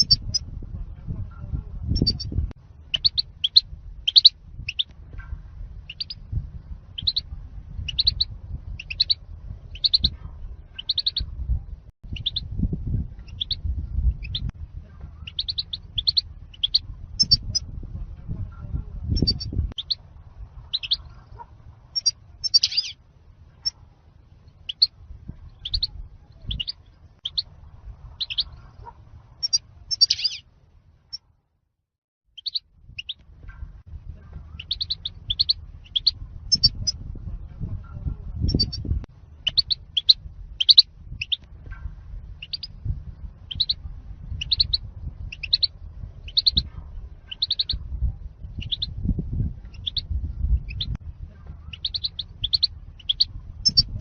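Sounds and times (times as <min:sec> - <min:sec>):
goldfinch chirping: 0:00.0 - 0:00.4, 0:02.9 - 0:04.9, 0:05.9 - 0:06.2, 0:07.0 - 0:07.2, 0:07.8 - 0:10.1, 0:10.8 - 0:11.2, 0:12.2 - 0:12.4, 0:13.3 - 0:13.6, 0:15.2 - 0:17.4, 0:20.7 - 0:21.1, 0:22.0 - 0:23.0, 0:25.6 - 0:25.9, 0:28.2 - 0:28.6, 0:29.4 - 0:30.4, 0:32.4 - 0:33.2, 0:34.6 - 0:37.0, 0:39.4 - 0:41.4, 0:42.4 - 0:42.8, 0:43.5 - 0:45.7, 0:46.3 - 0:46.7, 0:47.3 - 0:47.8, 0:48.6 - 0:49.0, 0:49.7 - 0:50.0, 0:51.7 - 0:54.0
low background rumble: 0:00.0 - 0:31.7, 0:32.3 - 0:54.0.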